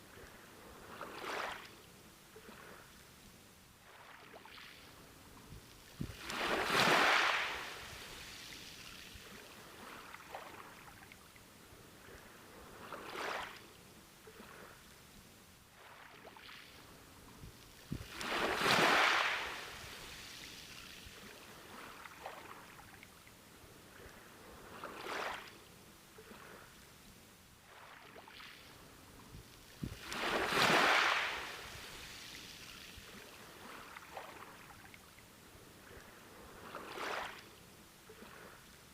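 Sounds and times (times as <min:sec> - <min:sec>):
waves washing onto beach: 0:00.0 - 0:03.0, 0:03.8 - 0:14.9, 0:15.7 - 0:26.8, 0:27.6 - 0:38.9
hiss of water: 0:05.9 - 0:10.0, 0:17.9 - 0:21.4, 0:29.8 - 0:34.3.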